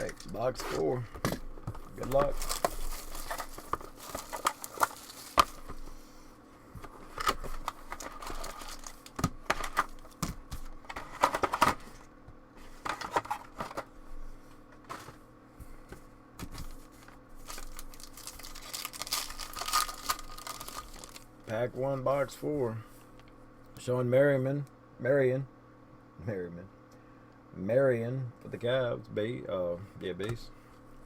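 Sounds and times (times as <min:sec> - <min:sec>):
plastic wrapping crinkling: 0:01.8 - 0:05.8, 0:07.5 - 0:10.1, 0:16.6 - 0:21.3.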